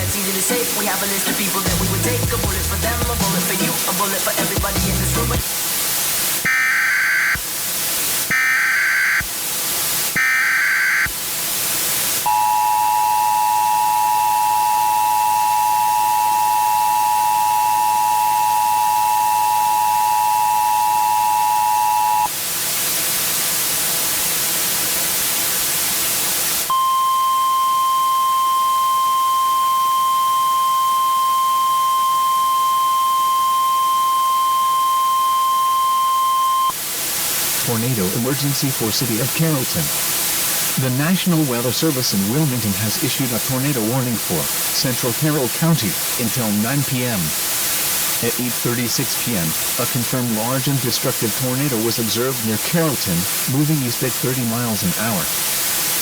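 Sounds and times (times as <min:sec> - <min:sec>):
static: 0:00.0 - 0:26.7, 0:29.4 - 0:56.0
data bursts: 0:06.4 - 0:07.6, 0:08.2 - 0:09.4, 0:10.1 - 0:11.2, 0:37.6 - 0:55.4
steady warning tone: 0:08.3 - 0:09.3, 0:10.2 - 0:11.2, 0:12.3 - 0:22.3, 0:26.7 - 0:36.8, 0:40.7 - 0:47.5, 0:48.1 - 0:55.3
two-tone attention signal: 0:12.3 - 0:22.3, 0:26.7 - 0:36.8.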